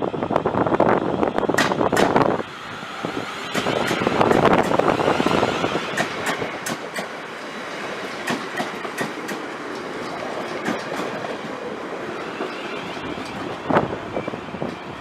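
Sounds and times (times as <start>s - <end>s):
train wheels clicking over rail joints: 1.5s - 11.6s.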